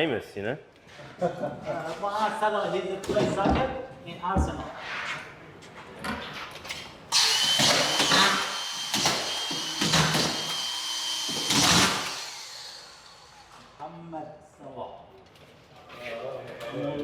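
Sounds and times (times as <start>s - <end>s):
screw gun whining: 7.1s - 13.8s.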